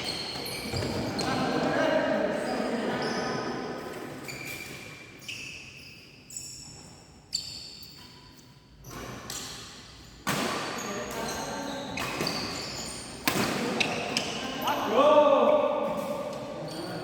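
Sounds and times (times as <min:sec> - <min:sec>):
sneakers squeaking on floor: 0:00.0 - 0:17.0
racket hitting shuttlecock: 0:08.9 - 0:11.2, 0:12.0 - 0:14.4.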